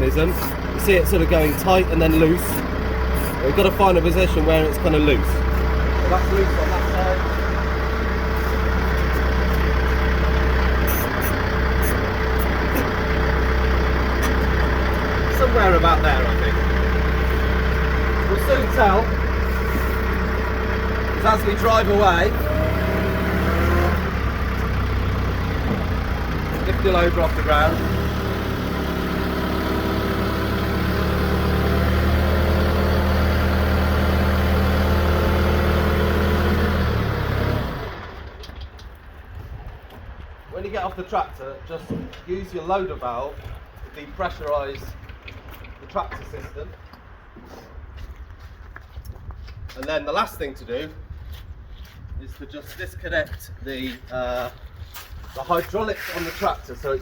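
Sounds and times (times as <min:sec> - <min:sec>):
constant whine: 0:00.0 - 0:22.9
diesel engine idling: 0:00.0 - 0:46.4.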